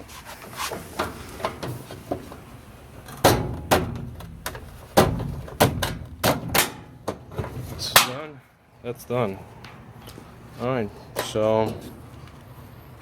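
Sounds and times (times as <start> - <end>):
panel parts knocking and snapping: 3.0 - 8.2.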